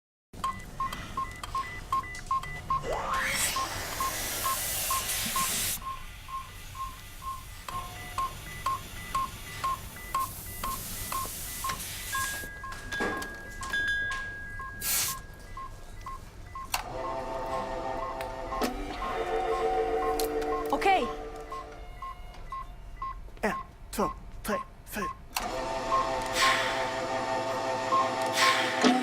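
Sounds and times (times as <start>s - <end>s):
medical monitor beeping: 0.4s - 26.9s
higher held beep tone: 2.0s - 12.8s, 18.0s - 23.6s
gas hissing: 2.9s - 7.7s, 8.3s - 12.5s, 14.8s - 15.2s, 26.0s - 29.0s.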